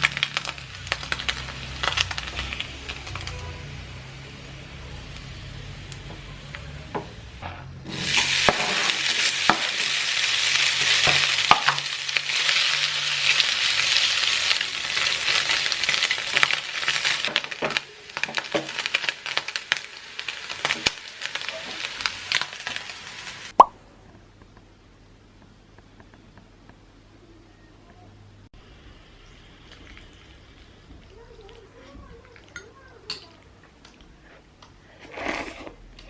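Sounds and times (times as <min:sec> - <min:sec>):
food sizzling in hot oil: 0:00.0 - 0:23.8.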